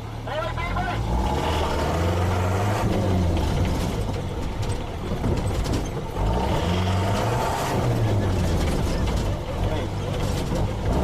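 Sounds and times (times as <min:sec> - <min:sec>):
off-road engine under load: 0:00.0 - 0:11.0
light clatter: 0:03.0 - 0:06.4, 0:07.0 - 0:11.0.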